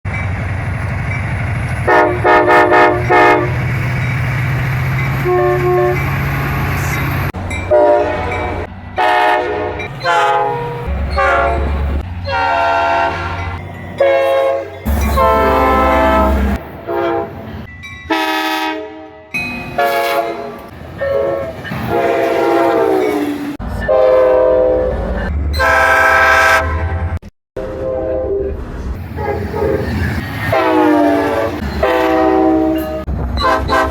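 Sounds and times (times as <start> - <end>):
rail noise: 0.0 - 33.9
locomotive engine rumble: 0.1 - 18.6
train horn blasts: 1.8 - 3.6, 5.2 - 6.9, 7.7 - 11.7, 12.3 - 13.4, 14.0 - 17.5, 18.1 - 25.0, 25.6 - 28.5, 29.2 - 33.9.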